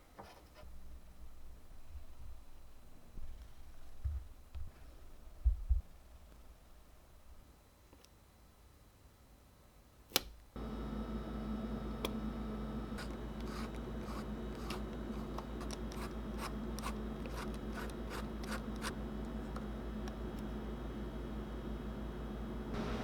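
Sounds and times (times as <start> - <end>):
low electrical hum: 0.0 - 23.0
small parts clicking and scratching: 13.0 - 18.9.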